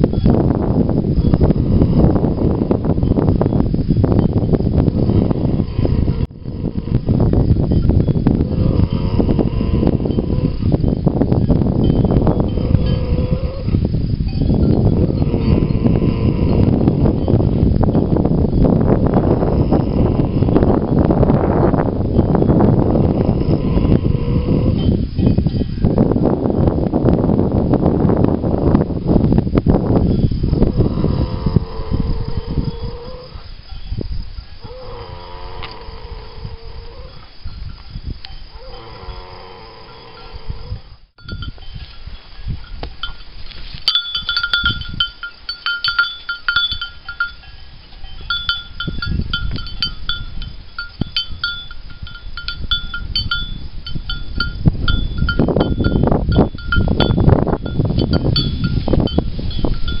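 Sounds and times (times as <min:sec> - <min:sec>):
wind rumbling on microphone: 0:00.0 - 1:00.0
horse snoring: 0:05.0 - 0:07.4, 0:08.4 - 0:10.7, 0:12.4 - 0:13.8, 0:15.0 - 0:17.1, 0:22.9 - 0:24.8, 0:30.8 - 0:33.4, 0:34.6 - 0:37.2, 0:38.5 - 0:40.9
livestock bells clinking: 0:10.0 - 0:13.6, 0:14.2 - 0:15.9, 0:24.7 - 0:25.9, 0:41.2 - 1:00.0.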